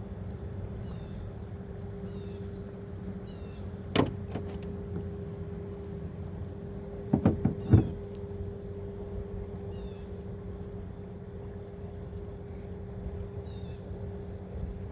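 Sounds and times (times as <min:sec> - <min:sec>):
sharp knocks: 0:07.1 - 0:08.0.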